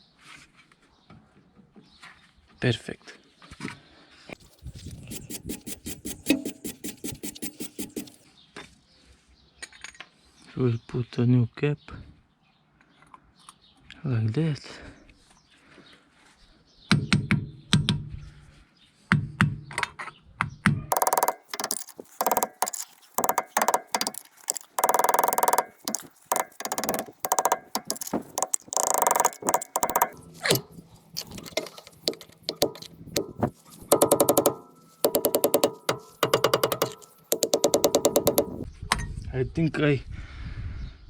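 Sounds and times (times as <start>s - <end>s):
metal knocks and clinks: 20.9s - 38.6s.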